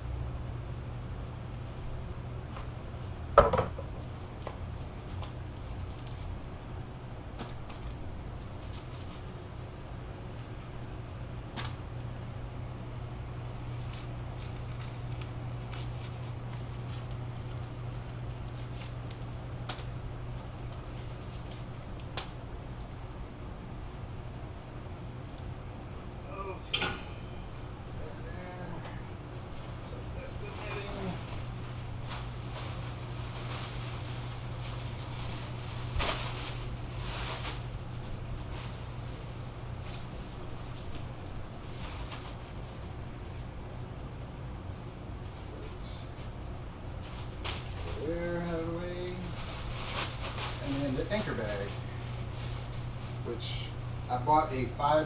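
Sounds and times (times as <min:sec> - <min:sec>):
steady low hum: 0:00.0 - 0:55.0
packaging rustling: 0:13.4 - 0:22.2, 0:29.4 - 0:43.5, 0:45.2 - 0:54.1.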